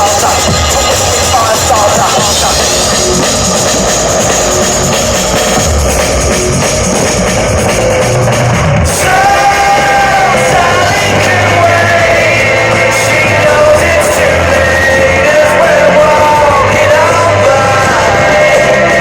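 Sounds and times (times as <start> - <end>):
person singing: 0.0 - 3.3, 8.8 - 19.0
loud rock music: 0.0 - 19.0.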